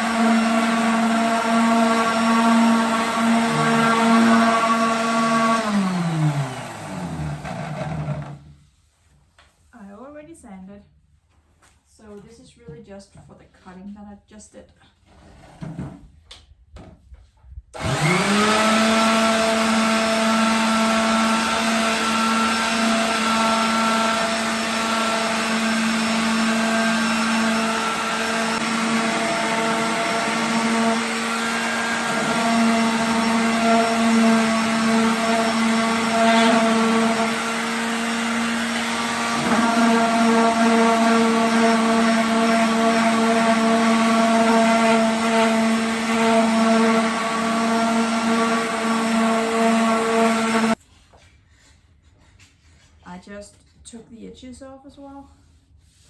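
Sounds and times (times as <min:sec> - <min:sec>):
electric power sander sanding wood: 0:00.0 - 0:08.4, 0:17.8 - 0:50.8.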